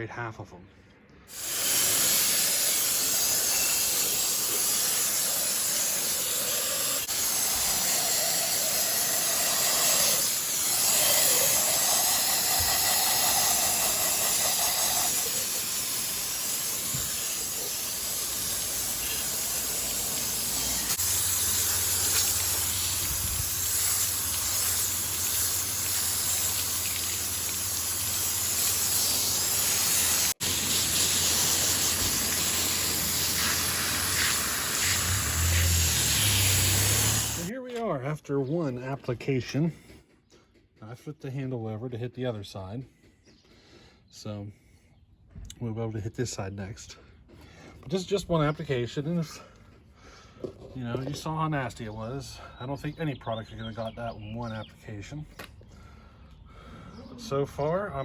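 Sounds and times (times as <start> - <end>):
water jet spraying onto metal: 1.3 - 37.5.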